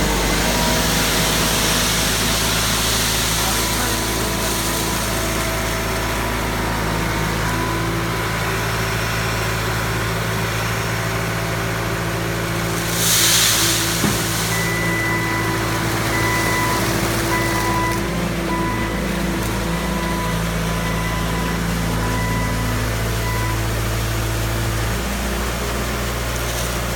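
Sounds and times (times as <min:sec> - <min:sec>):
loader engine running: 0:00.0 - 0:26.9
brief hiss: 0:12.8 - 0:14.8.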